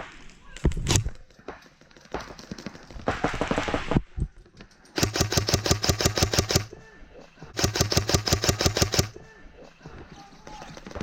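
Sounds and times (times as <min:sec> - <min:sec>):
running footsteps: 0:01.1 - 0:05.2
airsoft gun full-auto burst: 0:05.0 - 0:06.7, 0:07.6 - 0:09.2.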